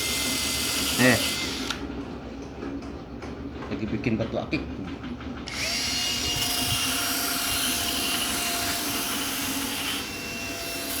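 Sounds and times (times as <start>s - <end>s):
electric grinder motor whining: 0.0s - 1.8s, 5.5s - 11.0s.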